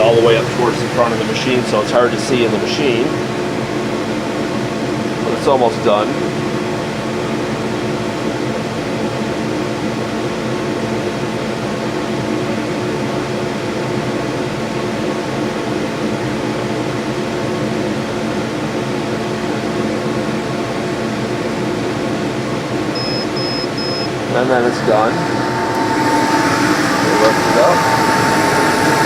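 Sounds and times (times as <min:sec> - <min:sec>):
laser engraving machine humming: 0:00.0 - 0:05.4, 0:18.0 - 0:29.0.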